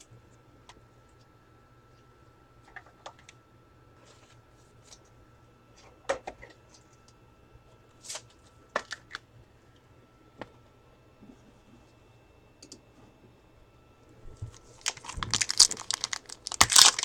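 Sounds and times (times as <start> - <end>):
faint hum: 0.0 - 17.0
trading cards clicking and shuffling: 14.7 - 17.0.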